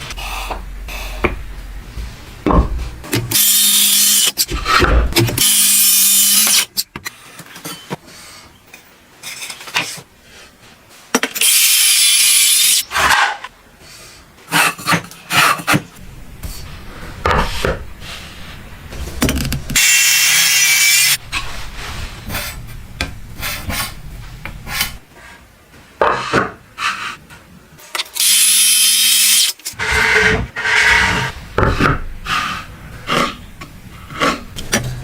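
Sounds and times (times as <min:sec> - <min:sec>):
saw cutting wood: 0:03.3 - 0:04.6, 0:11.4 - 0:12.8, 0:19.8 - 0:21.2, 0:28.1 - 0:31.3.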